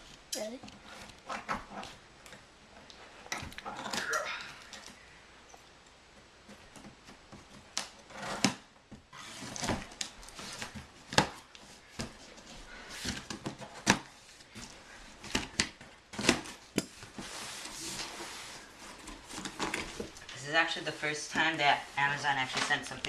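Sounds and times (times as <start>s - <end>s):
cardboard scraping rustles: 6.4s - 23.0s.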